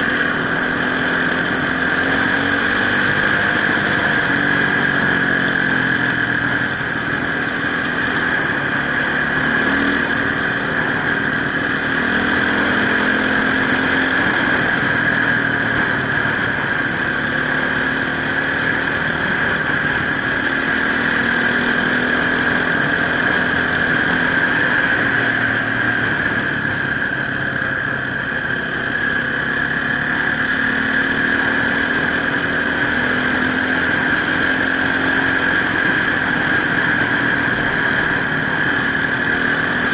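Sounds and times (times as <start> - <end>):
dirt bike engine revving: 0.0 - 39.9
steady high whine: 0.0 - 39.9.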